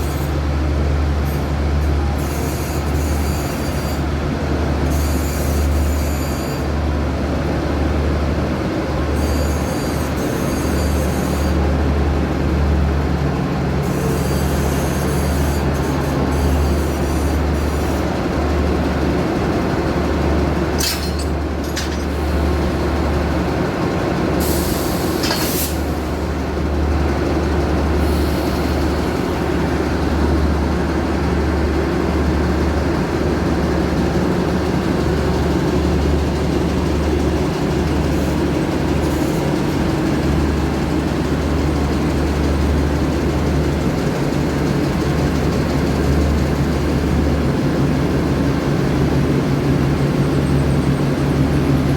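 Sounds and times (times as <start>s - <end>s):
locomotive engine humming: 0.0s - 51.9s
air brake hisses: 24.4s - 26.1s, 28.0s - 29.0s.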